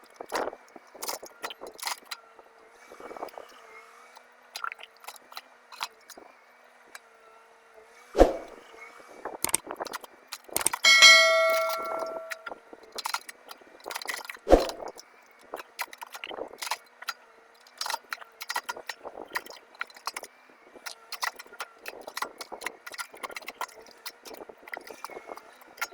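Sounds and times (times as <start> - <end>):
excavator metallic clanks: 10.6 - 12.5
loud ringing clang: 10.9 - 12.4.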